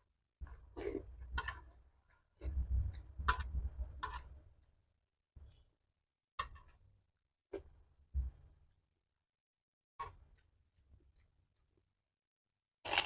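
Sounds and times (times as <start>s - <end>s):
wet chewing and mouth clicks: 0.4s - 5.8s.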